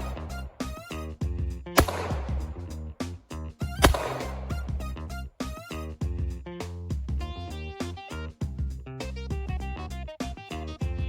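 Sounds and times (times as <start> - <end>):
background music with bass: 0.0 - 11.0
sharp percussive hit: 1.8 - 2.7, 3.8 - 4.7.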